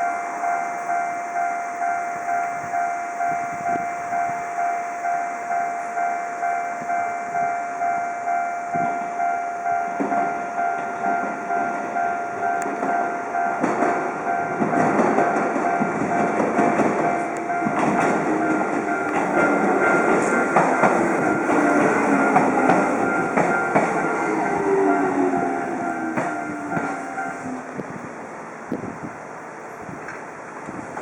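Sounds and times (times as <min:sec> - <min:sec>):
crossing bell ringing: 0:00.0 - 0:27.8
train wheels clicking over rail joints: 0:08.7 - 0:28.1.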